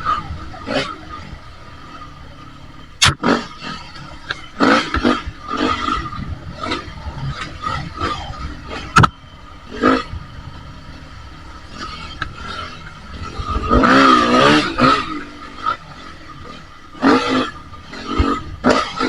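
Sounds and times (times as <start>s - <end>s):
dirt bike engine revving: 0.0s - 19.0s
sharp knock: 3.0s - 3.2s.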